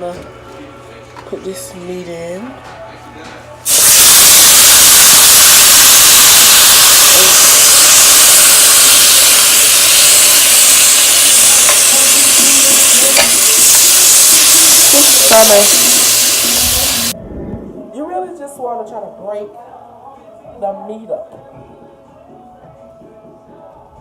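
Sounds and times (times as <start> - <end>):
meat sizzling in a pan: 3.7 - 17.2.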